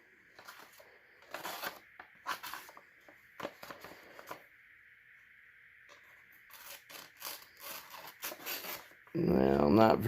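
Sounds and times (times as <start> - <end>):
knife tearing through paper: 6.5 - 8.9.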